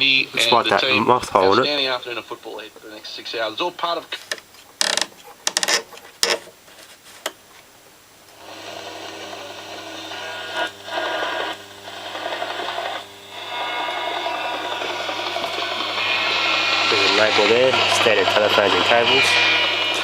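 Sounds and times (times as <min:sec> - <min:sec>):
radio hiss and static: 0:00.0 - 0:20.0
steady low hum: 0:07.8 - 0:20.0.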